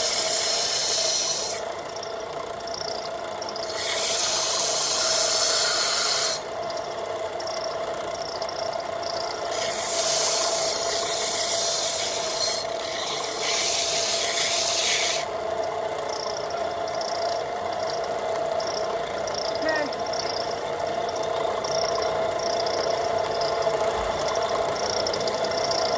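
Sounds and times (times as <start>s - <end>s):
abrasive rasping on axe blade: 0.0s - 1.7s, 3.6s - 6.5s, 9.5s - 15.3s.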